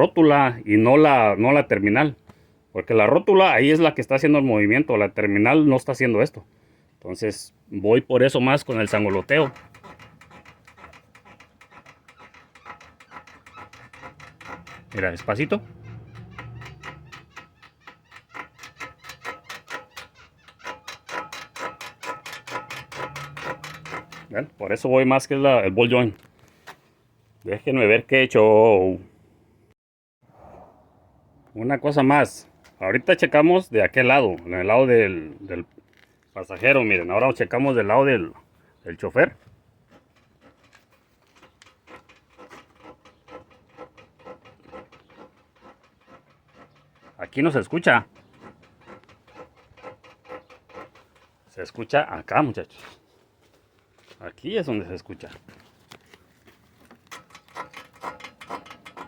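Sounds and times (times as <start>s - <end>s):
ball joint squeaking: 8.2s - 25.6s, 36.6s - 52.7s, 56.8s - 59.0s
suspension creaking rhythmically: 8.5s - 24.6s, 39.9s - 51.7s, 57.1s - 59.0s.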